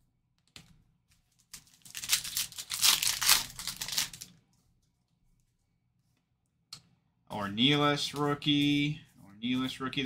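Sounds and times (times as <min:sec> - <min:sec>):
wrapper crinkling as torn open: 0:01.4 - 0:04.3.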